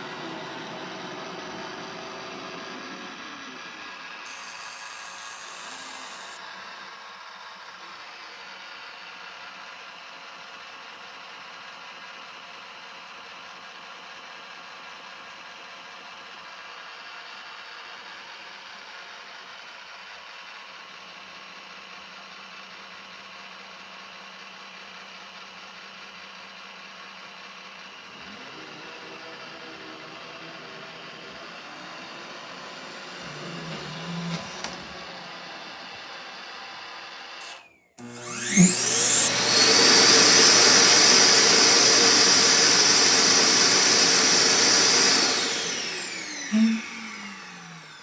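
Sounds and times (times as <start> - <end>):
robot vacuum whirring: 0.0 - 6.4, 28.2 - 48.0
high-pitched hiss: 4.3 - 6.4.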